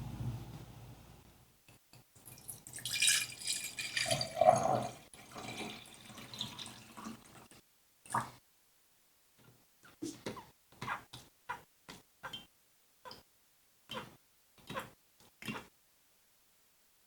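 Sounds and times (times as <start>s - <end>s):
low rumble: 0.0s - 1.2s.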